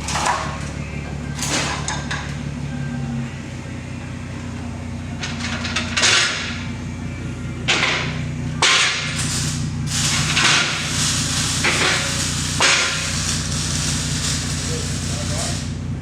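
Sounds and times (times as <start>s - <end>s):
car engine idling: 5.8s - 16.0s
loud exhaust rushes: 7.5s - 16.0s.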